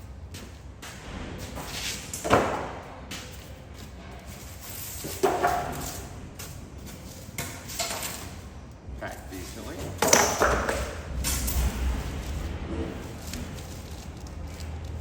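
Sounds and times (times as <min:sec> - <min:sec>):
packaging scraping and handling: 0:11.5 - 0:15.0.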